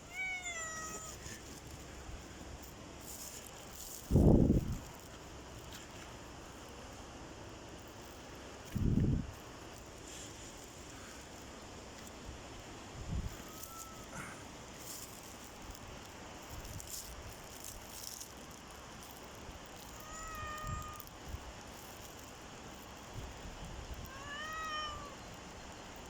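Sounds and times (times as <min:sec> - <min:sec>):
cat meowing: 0:00.0 - 0:01.2, 0:13.4 - 0:14.2, 0:20.0 - 0:21.0, 0:24.1 - 0:25.2
steady background hiss: 0:00.0 - 0:26.0.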